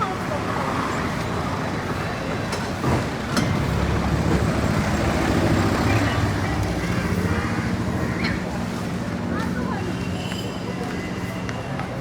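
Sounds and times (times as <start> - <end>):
traffic noise: 0.0 - 12.0
people's voices: 4.9 - 12.0.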